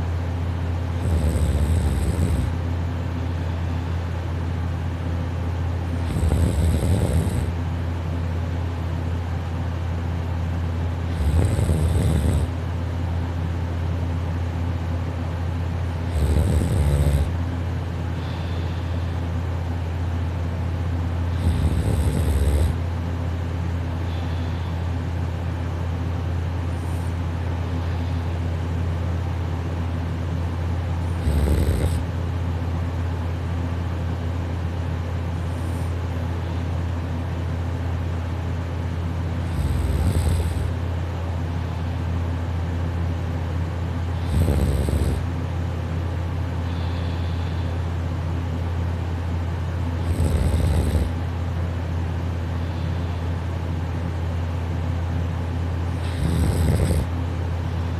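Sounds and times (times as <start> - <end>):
steady low hum: 0.0 - 57.9
person snoring softly: 0.9 - 2.6, 5.9 - 7.6, 11.1 - 12.6, 16.0 - 17.4, 18.2 - 19.2, 21.3 - 22.8, 26.6 - 28.4, 31.0 - 32.1, 35.4 - 36.6, 39.4 - 40.8, 44.2 - 45.3, 46.6 - 47.9, 50.0 - 51.2, 55.9 - 57.9.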